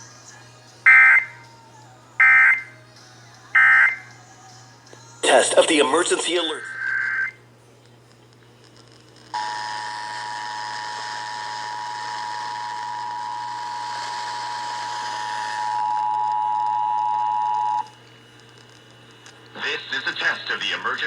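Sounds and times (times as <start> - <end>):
harsh two-tone alert signal: 0.9 - 1.4, 2.2 - 2.7, 3.6 - 4.0, 5.2 - 7.4.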